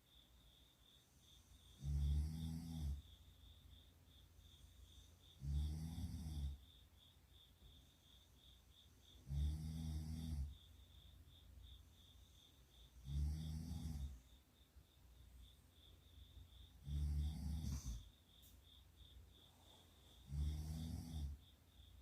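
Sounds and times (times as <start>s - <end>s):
person snoring: 1.8s - 3.0s, 5.4s - 6.6s, 9.2s - 10.6s, 13.0s - 14.2s, 16.8s - 18.1s, 20.2s - 21.4s.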